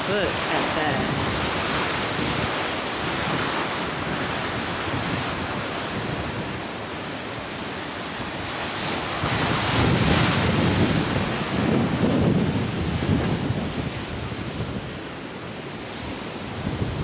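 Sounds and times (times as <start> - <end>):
ocean waves hissing on shore: 0.0 - 12.4
wind blowing: 0.0 - 17.0.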